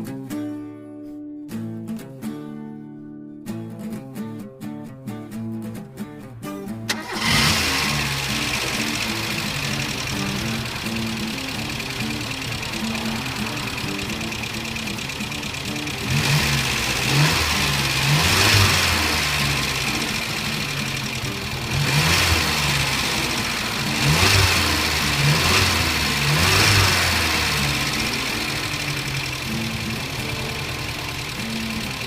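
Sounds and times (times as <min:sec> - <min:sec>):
car engine idling and revving: 0:06.9 - 0:32.0.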